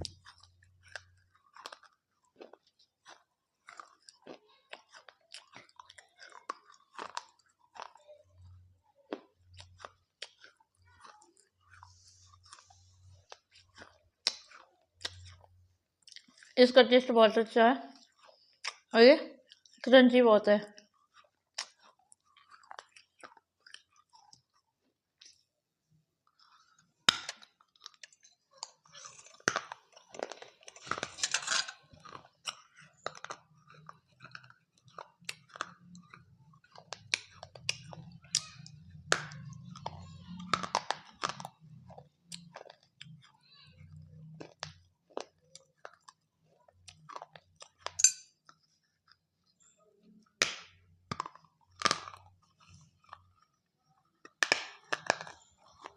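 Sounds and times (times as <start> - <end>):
crunchy wet chewing: 0.0 - 16.6, 17.9 - 19.9, 20.7 - 55.9.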